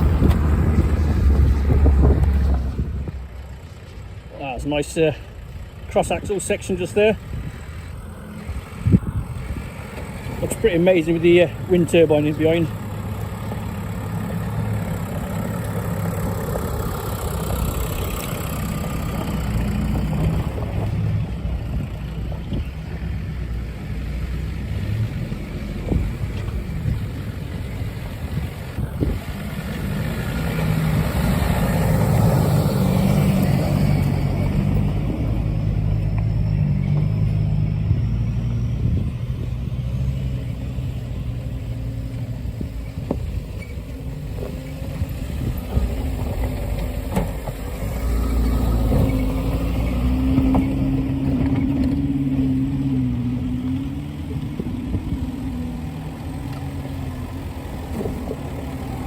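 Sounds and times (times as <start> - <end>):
off-road vehicle engine: 0.0 - 59.0.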